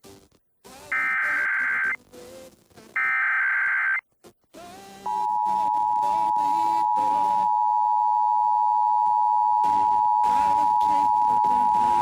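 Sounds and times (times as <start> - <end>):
two-tone attention signal: 5.1 - 12.0.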